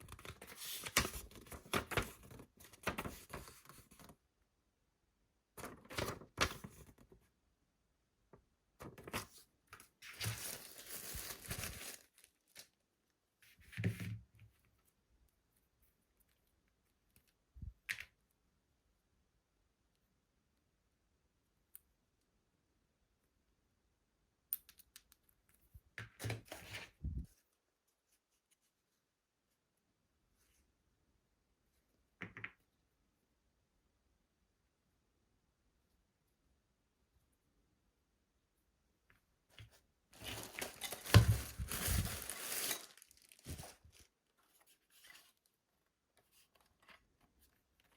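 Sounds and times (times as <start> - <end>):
packaging crinkling and tearing: 10.1 - 12.7, 40.2 - 44.1.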